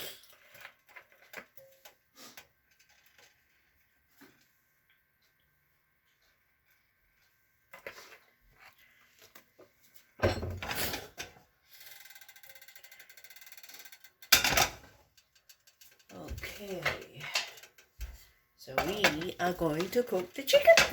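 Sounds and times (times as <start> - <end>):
cookware clanking: 18.8 - 20.9.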